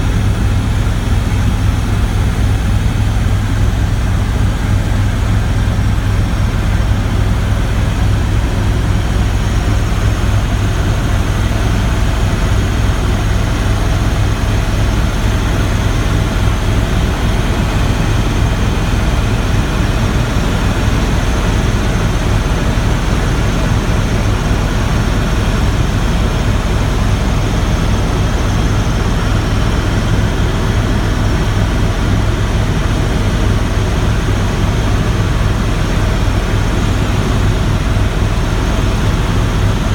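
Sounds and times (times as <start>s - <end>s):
helicopter engine and rotor drone: 0.0s - 39.9s.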